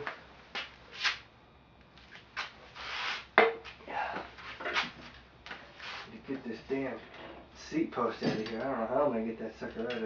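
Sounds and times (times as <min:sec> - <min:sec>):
tools knocking on workbench: 0:03.4 - 0:03.6.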